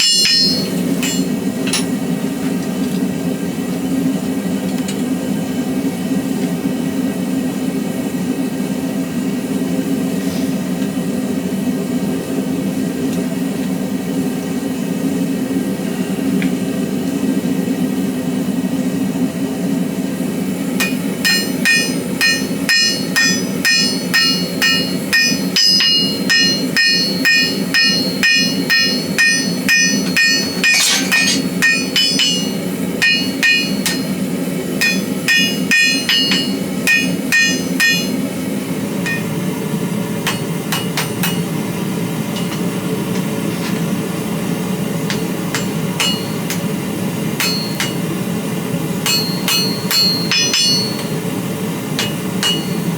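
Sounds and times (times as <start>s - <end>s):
hammer ringing on anvil: 0.0s - 2.0s, 20.8s - 39.6s, 40.2s - 41.6s, 45.1s - 48.2s, 49.0s - 51.4s, 52.0s - 52.9s.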